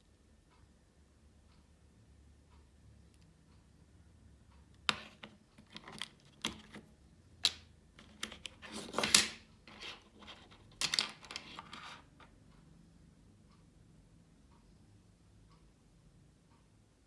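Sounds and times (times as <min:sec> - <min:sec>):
mechanical keyboard typing: 0:04.8 - 0:12.2.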